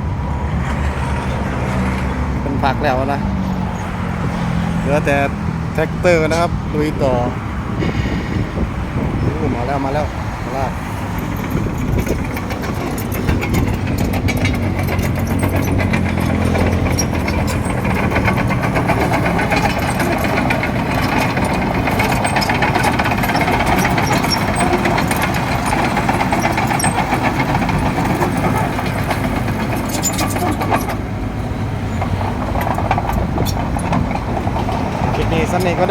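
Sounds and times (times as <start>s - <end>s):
diesel engine running: 0.0s - 35.9s
rapid metallic clatter: 9.4s - 35.9s.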